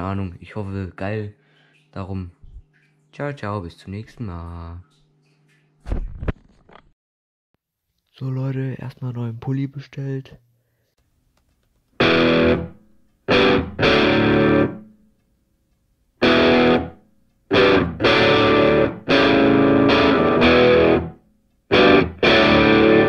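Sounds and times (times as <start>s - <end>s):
distorted electric guitar chords: 12.0s - 14.9s, 16.2s - 23.0s.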